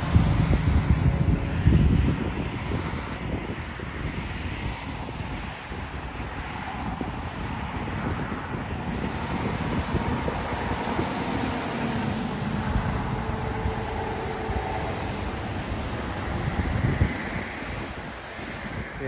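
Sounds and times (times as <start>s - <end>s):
vehicle rumble: 0.0s - 19.0s
wind buffeting microphone: 0.0s - 19.0s.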